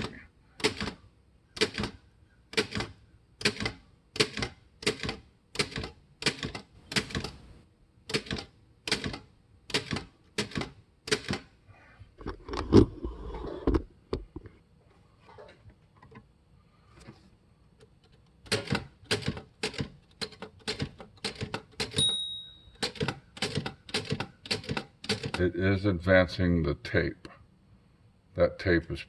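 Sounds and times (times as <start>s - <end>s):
typewriter keys striking: 1.6s - 7.4s, 18.5s - 22.1s, 22.8s - 25.4s.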